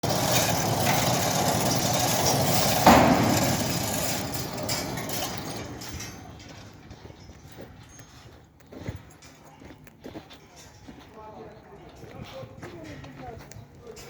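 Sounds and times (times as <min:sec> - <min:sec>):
machinery noise: 0:00.0 - 0:07.4
loud bang: 0:00.1 - 0:06.7.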